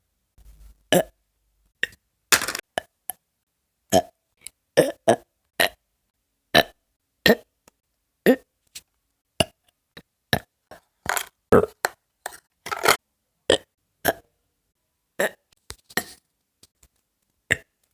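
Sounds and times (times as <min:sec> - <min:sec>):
person burping: 0:00.9 - 0:01.2, 0:03.9 - 0:04.2, 0:04.8 - 0:05.8, 0:06.5 - 0:07.5, 0:08.2 - 0:08.5, 0:11.5 - 0:11.8, 0:13.5 - 0:14.3, 0:15.2 - 0:15.5, 0:17.5 - 0:17.8.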